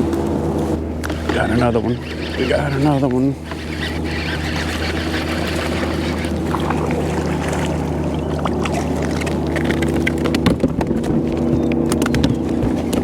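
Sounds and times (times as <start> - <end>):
steady low hum: 0.0 - 13.0
water sloshing: 0.0 - 13.0
fishing reel cranking: 1.0 - 7.1
sharp knocks and clicks: 9.6 - 13.0.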